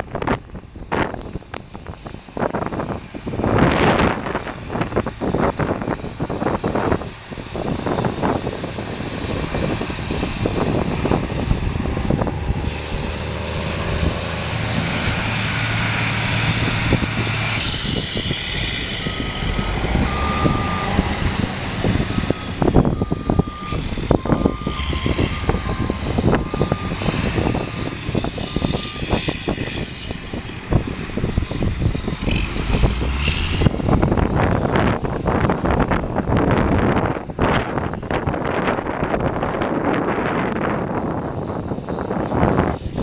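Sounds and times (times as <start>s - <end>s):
tractor engine running: 0.0s - 43.0s
wind buffeting microphone: 0.0s - 43.0s
reversing alarm beeping: 18.6s - 29.8s.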